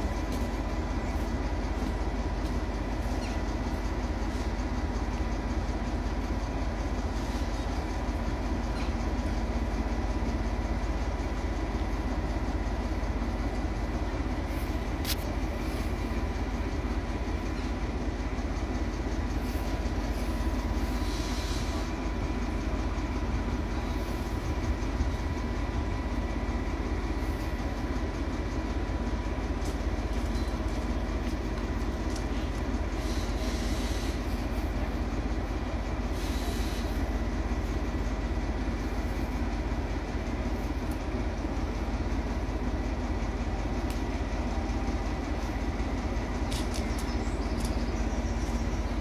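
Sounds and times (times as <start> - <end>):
diesel locomotive engine rumbling: 0.0 - 49.0
sharp click: 46.5 - 47.8.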